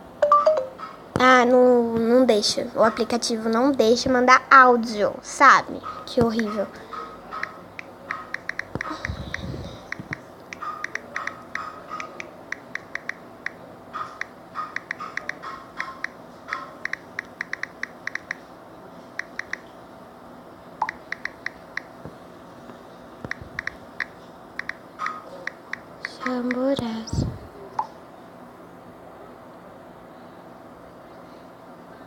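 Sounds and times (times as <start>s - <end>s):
phone keyboard key clicks: 8.3s - 9.2s, 9.9s - 13.2s, 16.8s - 18.4s.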